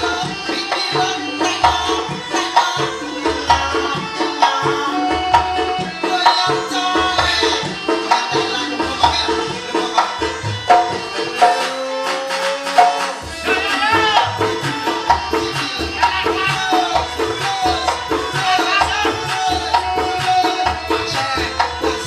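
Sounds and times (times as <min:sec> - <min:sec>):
hand drum strokes: 0:10.6 - 0:17.0.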